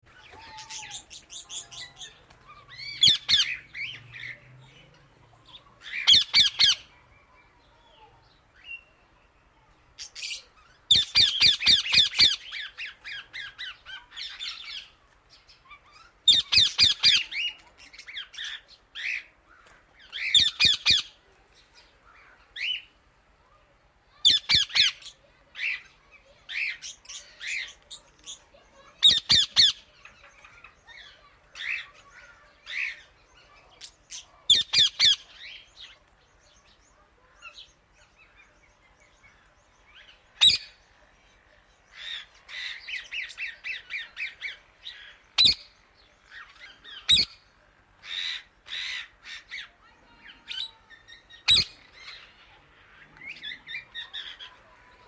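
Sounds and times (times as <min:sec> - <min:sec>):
parrot harsh calls: 0:00.2 - 0:02.0, 0:02.7 - 0:03.9, 0:05.9 - 0:06.9, 0:42.0 - 0:45.7, 0:48.0 - 0:49.7, 0:50.5 - 0:52.3
parrot soft chirps: 0:40.0 - 0:40.8, 0:41.9 - 0:47.4, 0:50.4 - 0:52.5.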